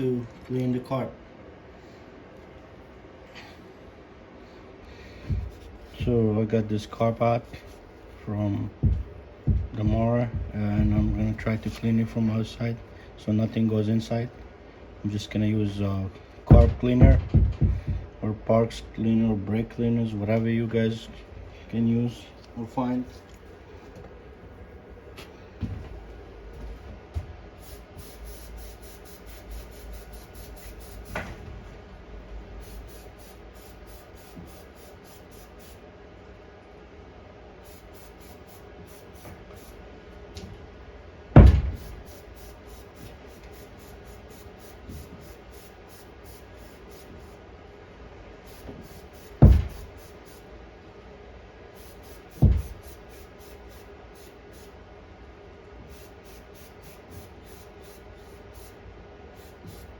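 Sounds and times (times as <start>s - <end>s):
faint steady hum: 0.0s - 59.9s
sharp knocks: 8.8s - 11.3s, 16.5s - 18.1s, 41.3s - 42.0s, 49.4s - 49.9s, 52.4s - 52.8s.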